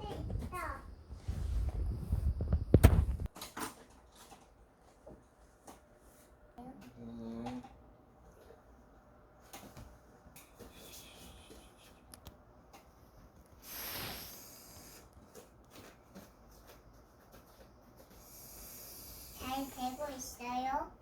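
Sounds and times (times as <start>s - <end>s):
loud hiss: 13.6s - 15.0s.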